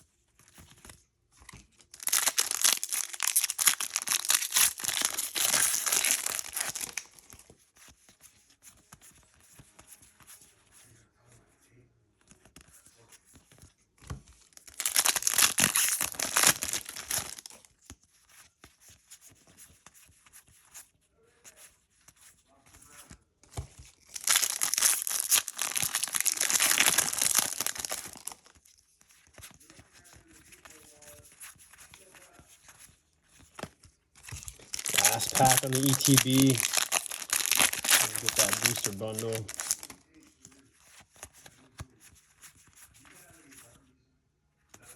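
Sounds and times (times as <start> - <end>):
foil wrapper crinkling and tearing: 1.8 - 7.3, 14.5 - 17.6, 24.0 - 28.5, 34.3 - 40.1.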